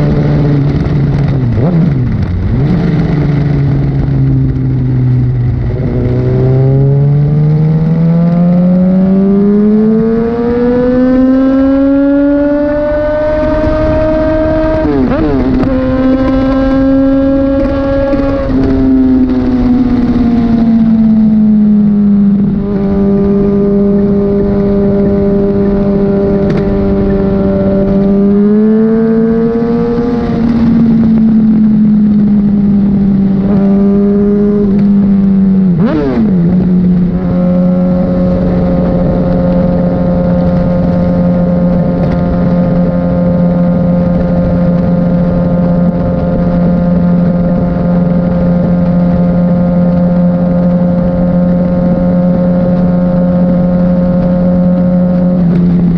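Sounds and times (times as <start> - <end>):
motorcycle engine cruising: 0.0 - 55.9
wind noise: 0.0 - 55.9.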